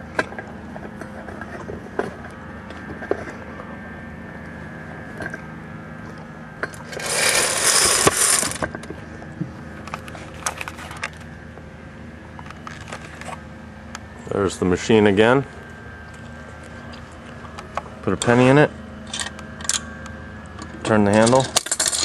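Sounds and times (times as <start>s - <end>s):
rattling scraping burst: 6.9s - 8.6s.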